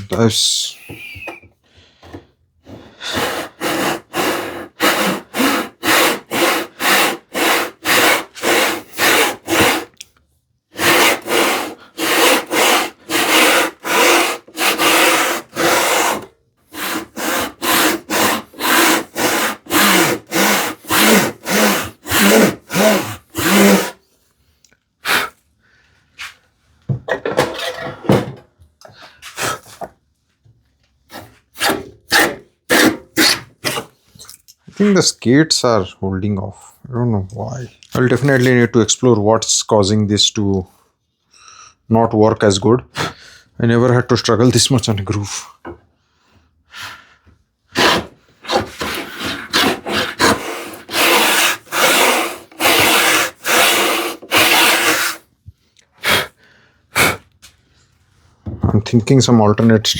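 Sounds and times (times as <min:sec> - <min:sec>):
plane scraping wood: 0:02.0 - 0:10.0, 0:10.8 - 0:24.0, 0:47.8 - 0:55.2.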